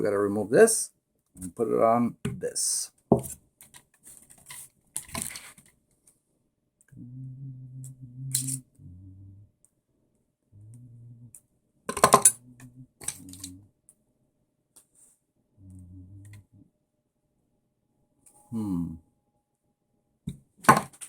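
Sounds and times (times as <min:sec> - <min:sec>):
low hum: 0:06.9 - 0:09.6, 0:10.5 - 0:11.4, 0:12.0 - 0:13.7, 0:15.6 - 0:16.7.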